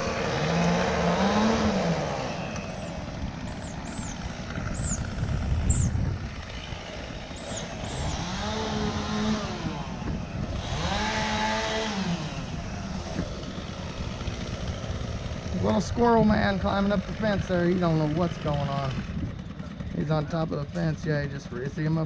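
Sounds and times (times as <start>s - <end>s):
engine revving: 0.0s - 21.9s
high chirps: 2.6s - 5.1s.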